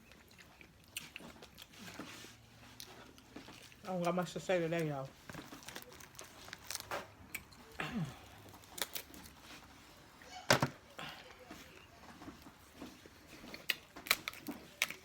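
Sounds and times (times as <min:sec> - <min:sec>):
crab shells cracking: 0:08.5 - 0:09.4, 0:13.5 - 0:15.0.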